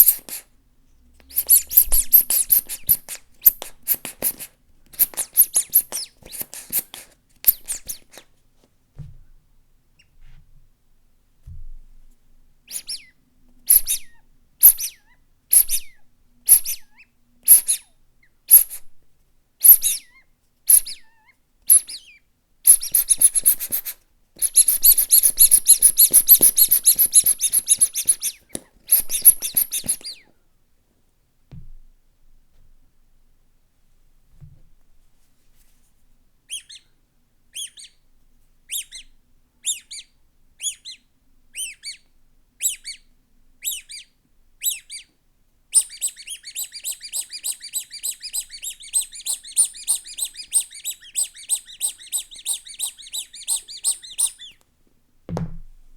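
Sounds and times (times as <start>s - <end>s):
rubber squeaky toys squeaking: 0.0s - 0.5s, 1.3s - 8.3s, 12.7s - 13.1s, 13.7s - 17.9s, 18.5s - 18.9s, 19.6s - 30.3s, 36.5s - 36.8s, 37.6s - 38.0s, 38.7s - 41.0s, 41.6s - 42.0s, 42.6s - 43.0s, 43.6s - 45.1s, 45.7s - 54.6s.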